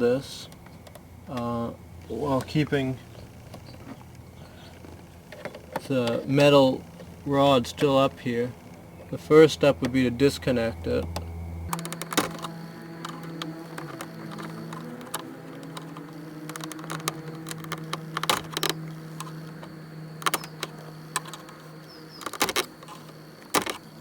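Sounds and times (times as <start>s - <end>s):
low hum: 0.0s - 24.0s
plastic clicks and knocks: 13.1s - 24.0s.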